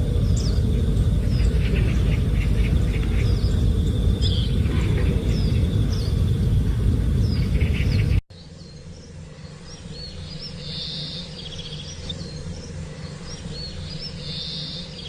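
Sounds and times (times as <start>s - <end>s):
loud low rumble: 0.0s - 8.2s
songbirds chirping: 0.0s - 15.0s
steady low hum: 0.0s - 15.0s.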